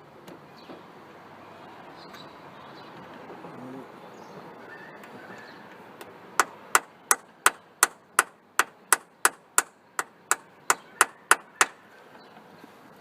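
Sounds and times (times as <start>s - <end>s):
hammer tapping on metal: 6.4s - 11.8s.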